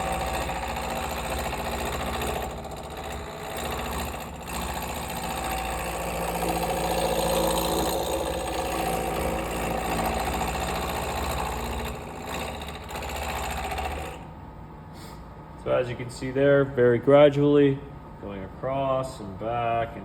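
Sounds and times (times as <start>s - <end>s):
wood chattering against a tool: 0.0s - 14.2s
lathe motor hum: 0.0s - 14.4s.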